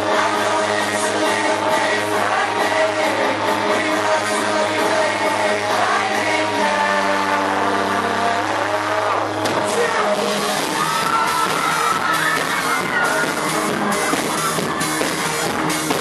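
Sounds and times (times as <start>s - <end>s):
live pop band music: 0.0s - 16.0s
crowd cheering and screaming: 5.6s - 16.0s.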